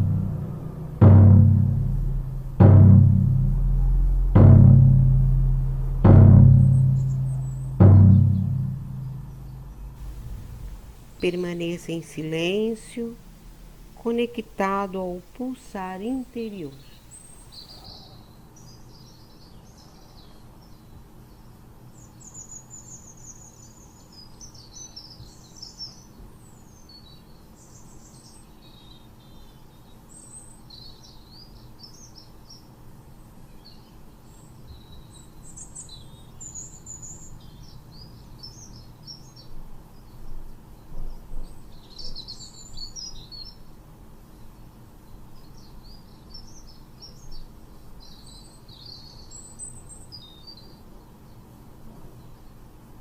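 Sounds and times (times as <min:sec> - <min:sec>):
faint low hum: 0:00.0 - 0:17.8
small birds chirping: 0:09.4 - 0:20.9.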